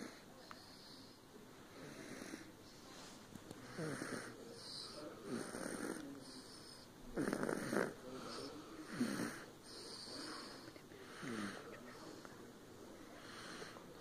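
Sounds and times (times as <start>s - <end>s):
person snoring: 3.7s - 11.7s.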